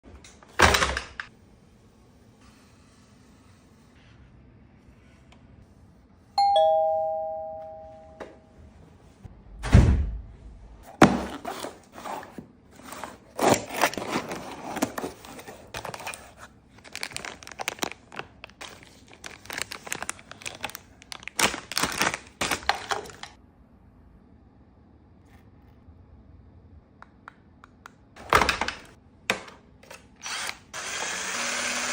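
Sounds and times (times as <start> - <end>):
two-note chime: 6.4 - 8.3
heavy thump: 9.6 - 11.3.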